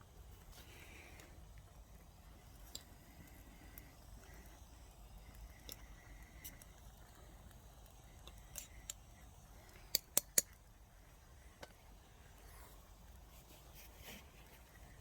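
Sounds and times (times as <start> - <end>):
sharp clicks or snaps: 9.7 - 10.6.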